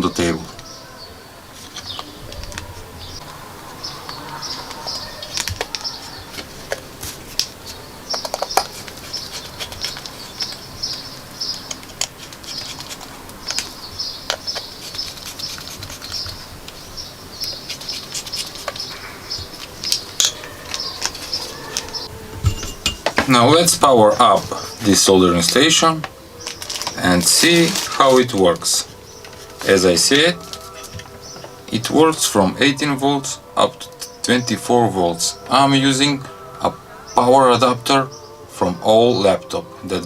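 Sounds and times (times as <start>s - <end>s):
small bird chirping: 0.0s - 23.0s.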